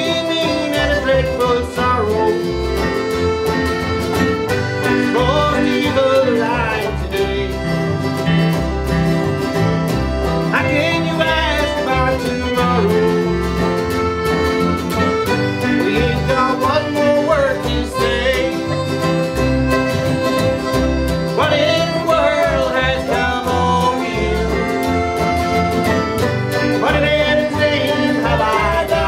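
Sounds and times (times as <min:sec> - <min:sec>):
fiddle melody: 0:00.0 - 0:29.0
strummed acoustic guitar: 0:00.0 - 0:29.0.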